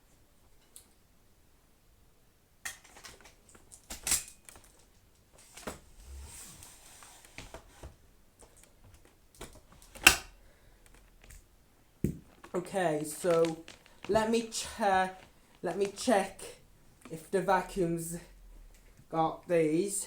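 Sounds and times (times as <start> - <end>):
short rustle: 12.2 - 18.2.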